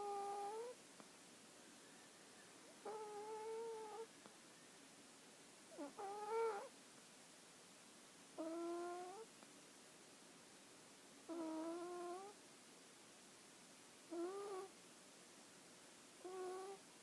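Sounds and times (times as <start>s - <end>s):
pet snoring: 0.0s - 0.8s, 2.8s - 4.1s, 5.7s - 6.7s, 8.4s - 9.3s, 11.3s - 12.4s, 14.1s - 14.7s, 16.2s - 16.8s.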